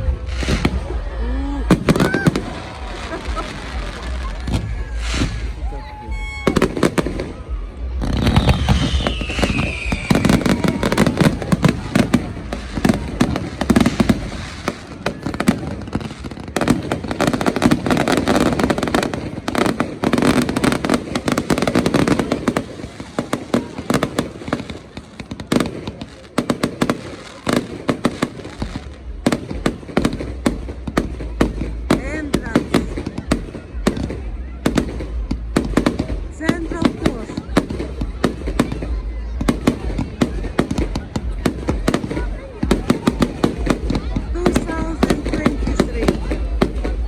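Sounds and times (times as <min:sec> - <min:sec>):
fireworks bangs and crackles: 0:00.0 - 0:47.0
whistling firework shell: 0:08.2 - 0:11.7.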